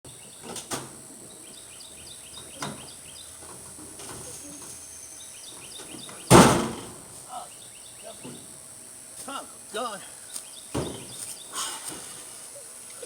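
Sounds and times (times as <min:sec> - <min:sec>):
bird chirping: 0:01.2 - 0:03.5, 0:04.2 - 0:06.4, 0:07.3 - 0:08.5, 0:10.1 - 0:11.6
loud thump: 0:06.3 - 0:07.1.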